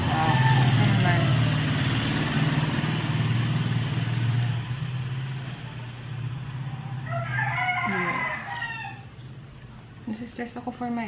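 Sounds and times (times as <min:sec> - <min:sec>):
rooster crowing: 0:00.0 - 0:01.3, 0:06.7 - 0:09.2
vehicle engine idling: 0:00.0 - 0:07.4.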